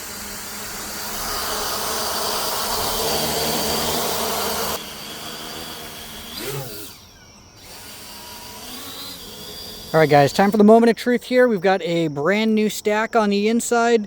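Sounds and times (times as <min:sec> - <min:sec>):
motor whine rising and falling: 0:00.0 - 0:10.7
quadcopter motors whirring: 0:00.0 - 0:10.8.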